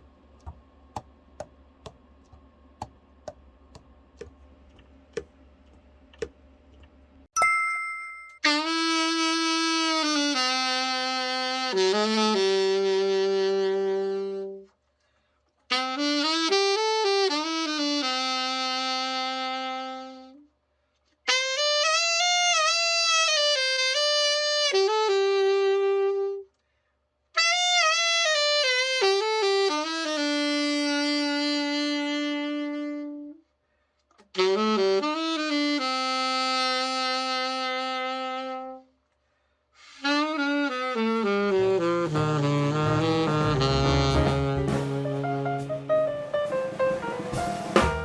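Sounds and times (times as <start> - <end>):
alto saxophone phrases: 8.4 - 14.7, 15.7 - 20.5, 21.3 - 26.6, 27.4 - 33.5, 34.3 - 39.0, 39.8 - 47.0.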